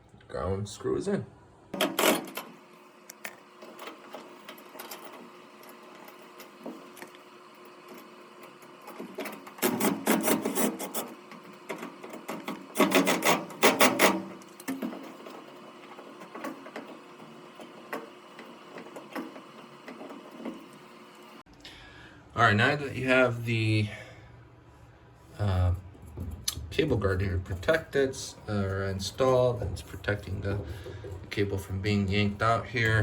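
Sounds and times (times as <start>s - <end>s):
rubbing and handling noise: 1.8s - 21.4s, 25.2s - 33.0s
rapid clicking and rasping: 3.1s - 21.4s, 26.3s - 33.0s.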